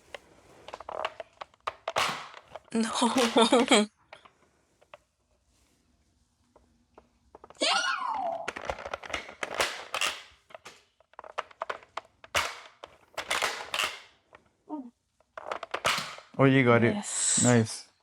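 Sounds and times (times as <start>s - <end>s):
toy blaster clicks and knocks: 0.7s - 4.3s, 8.3s - 14.2s, 15.2s - 16.4s.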